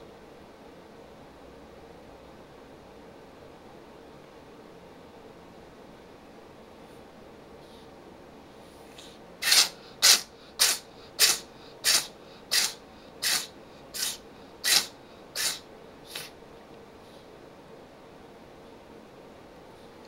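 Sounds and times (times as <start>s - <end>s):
cat sneezing: 9.0s - 16.4s.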